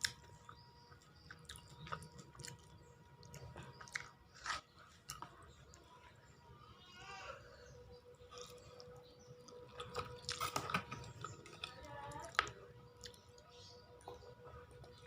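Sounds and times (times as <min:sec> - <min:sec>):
crunchy bites: 0:00.0 - 0:05.4
person chewing: 0:00.0 - 0:05.8, 0:08.1 - 0:11.7
faint steady hum: 0:00.0 - 0:15.0.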